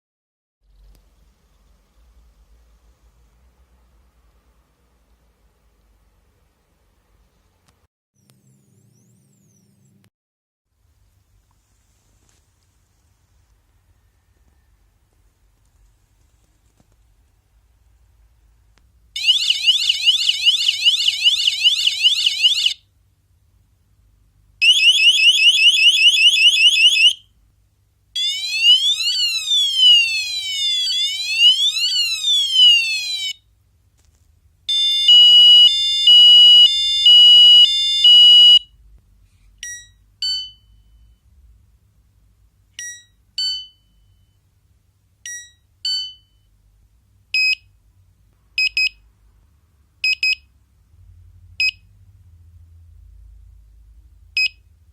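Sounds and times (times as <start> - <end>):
siren up-and-down wail: 19.2 - 22.8, 24.6 - 27.2, 28.2 - 33.4, 34.7 - 38.6
siren rising yelps: 24.6 - 27.2, 28.2 - 33.4.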